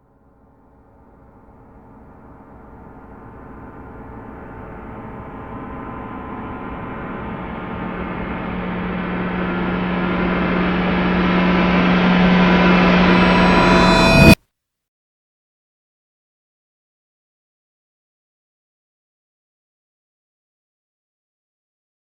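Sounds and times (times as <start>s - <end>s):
steady low tone: 0.8s - 14.4s
gong-like metallic riser: 1.6s - 14.4s.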